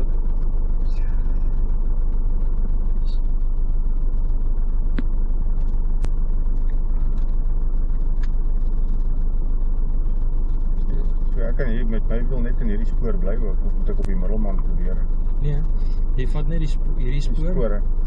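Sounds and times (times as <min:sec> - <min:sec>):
vehicle engine rumble: 0:00.0 - 0:18.0.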